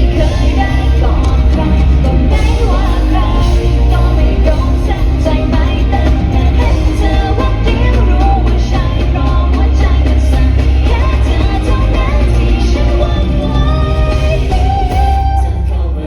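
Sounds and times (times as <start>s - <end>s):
live pop-rock music: 0.0s - 16.0s
person singing: 0.0s - 16.0s.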